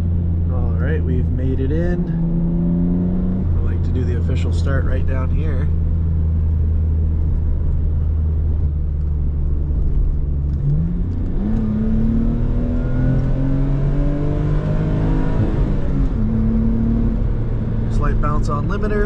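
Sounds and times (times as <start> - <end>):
car engine accelerating: 0.0 - 19.0.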